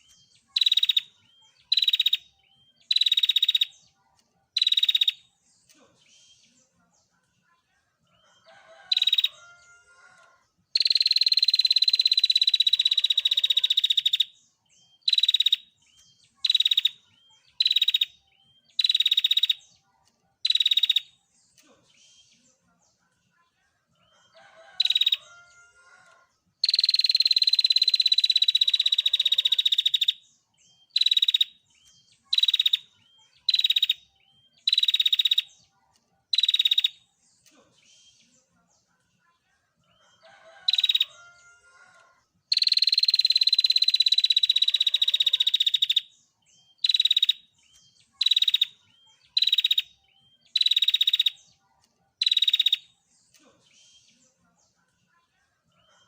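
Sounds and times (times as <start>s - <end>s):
bird singing rapid trills: 0.0s - 3.9s, 4.6s - 5.3s, 10.7s - 19.7s, 20.4s - 21.2s, 24.4s - 25.6s, 26.6s - 35.6s, 36.3s - 37.0s, 40.4s - 41.4s, 42.5s - 51.5s, 52.2s - 52.9s.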